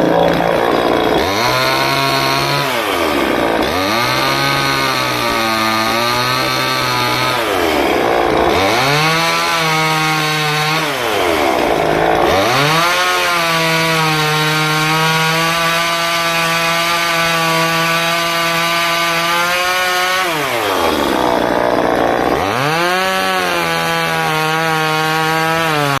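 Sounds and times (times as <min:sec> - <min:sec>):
chainsaw carving wood: 0:00.0 - 0:26.0.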